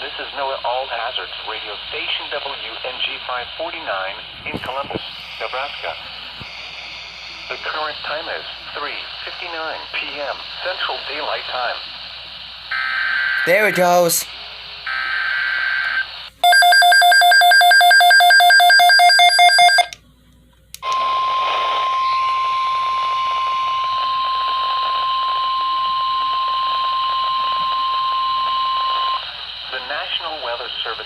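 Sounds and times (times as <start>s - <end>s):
radio static: 13.4s - 14.3s
steady warning alarm tone: 15.3s - 20.0s.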